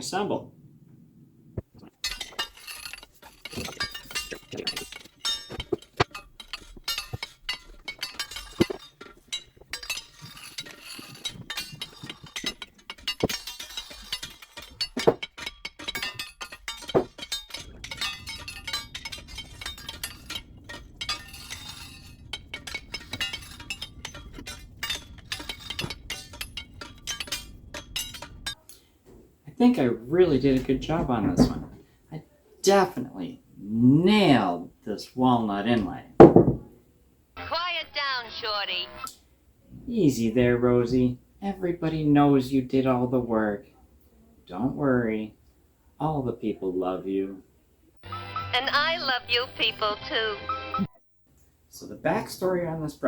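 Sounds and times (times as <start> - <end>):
low steady hum: 0.4 - 28.6.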